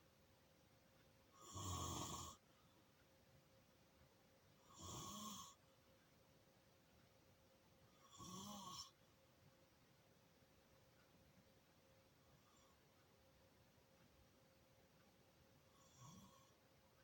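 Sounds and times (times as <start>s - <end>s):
faint snoring: 1.3s - 2.4s, 4.6s - 5.6s, 7.9s - 9.0s, 15.7s - 16.6s.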